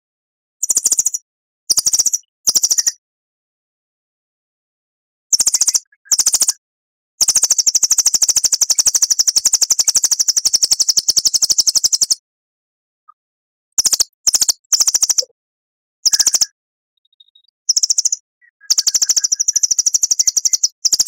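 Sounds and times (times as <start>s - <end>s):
songbird rapid rattling trill: 5.3s - 6.6s, 7.2s - 12.2s, 13.8s - 15.3s, 16.0s - 16.6s, 17.7s - 21.0s.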